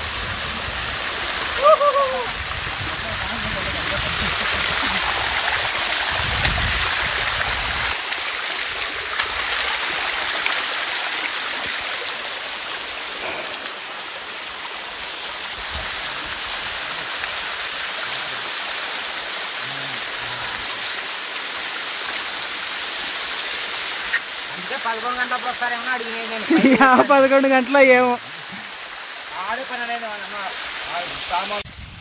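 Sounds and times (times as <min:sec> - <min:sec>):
water rushing over rocks: 0:00.0 - 0:31.7.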